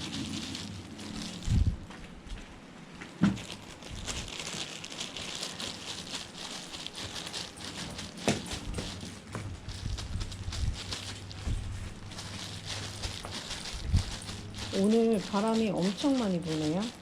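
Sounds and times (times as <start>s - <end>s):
gusty wind: 0.0s - 2.4s, 8.8s - 14.6s
rustling: 0.0s - 17.0s.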